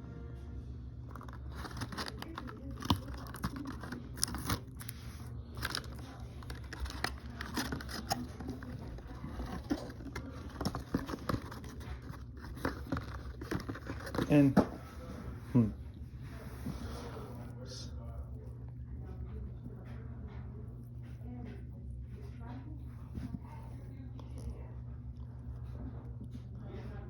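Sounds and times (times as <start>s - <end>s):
plastic packaging crinkling: 1.1s - 14.6s.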